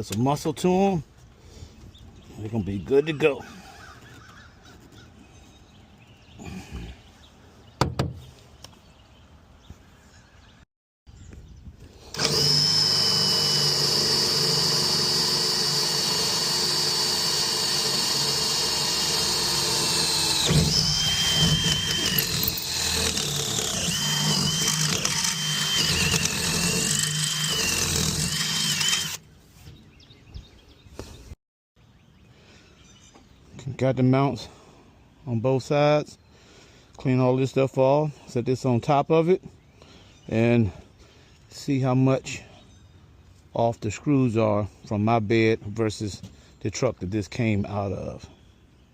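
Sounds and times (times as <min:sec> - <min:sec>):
power drill whine: 0:12.0 - 0:29.2.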